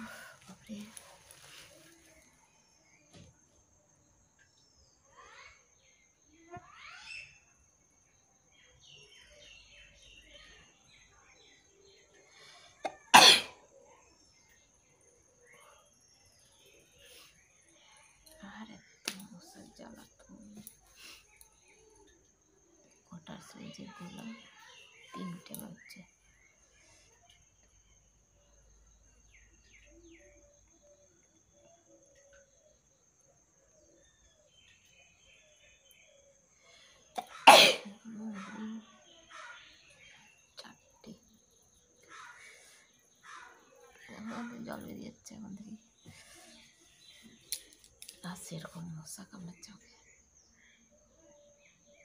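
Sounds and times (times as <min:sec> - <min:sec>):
faint bird chirps: 0:00.0 - 0:52.0
person sneezing: 0:12.9 - 0:13.6, 0:37.2 - 0:37.9.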